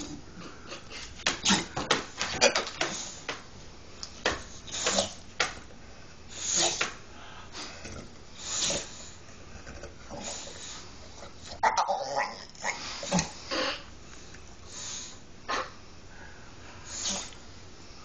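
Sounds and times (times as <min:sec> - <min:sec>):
dog making odd noises: 0:00.0 - 0:02.6, 0:11.4 - 0:13.7.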